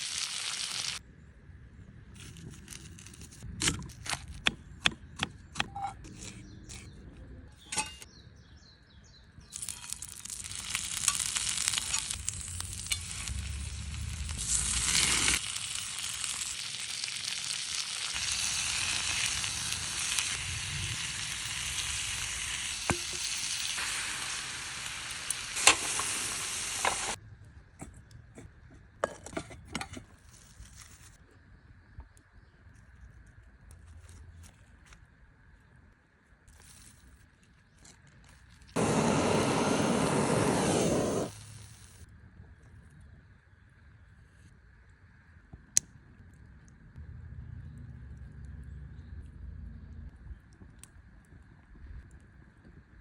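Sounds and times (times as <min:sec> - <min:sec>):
beef sizzling in a pan: 0:00.0 - 0:01.0, 0:09.6 - 0:27.2.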